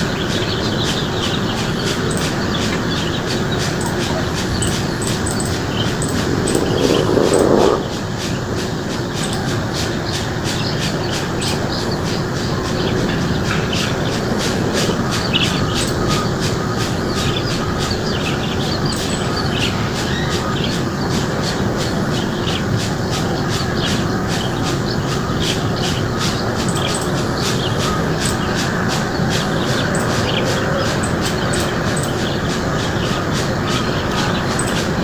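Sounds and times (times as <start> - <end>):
steady rushing noise: 0.0 - 35.0
birds chirping and calling: 0.1 - 35.0
high pulsing sound: 2.0 - 9.5.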